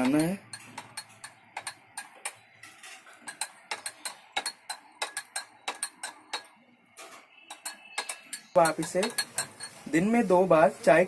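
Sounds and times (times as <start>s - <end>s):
spoon clinking in a cup: 0.0s - 2.5s, 3.2s - 6.6s, 7.3s - 9.9s.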